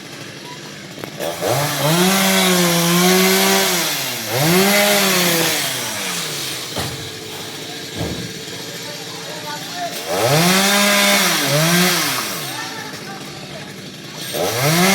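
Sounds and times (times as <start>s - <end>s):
chainsaw revving: 0.0s - 14.9s
short knock: 8.0s - 8.4s.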